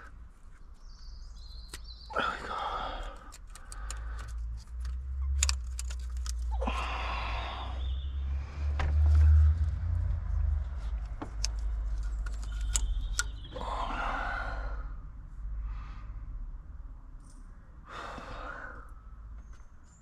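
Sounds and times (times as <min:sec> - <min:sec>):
steady low rumble: 0:00.0 - 0:19.5
small parts clicking: 0:01.6 - 0:06.9, 0:10.9 - 0:13.4.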